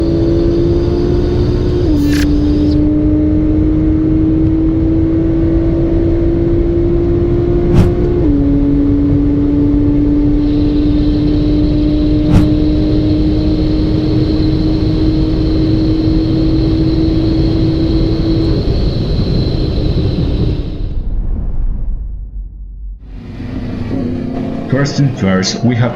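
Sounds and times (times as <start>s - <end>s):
heavy wind noise: 7.2s - 22.4s.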